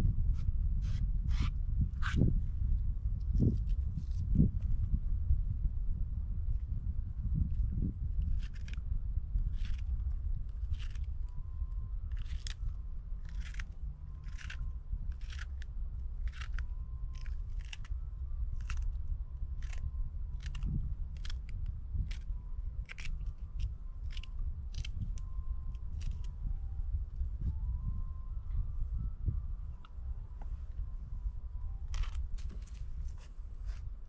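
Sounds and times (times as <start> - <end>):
steady low rumble: 0.0 - 34.0
crisp crunching strokes: 9.4 - 11.2, 12.1 - 26.3, 31.9 - 33.9.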